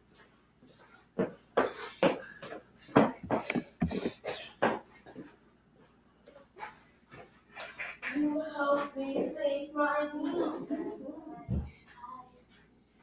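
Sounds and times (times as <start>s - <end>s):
irregular knocks and clatters: 2.9s - 4.8s.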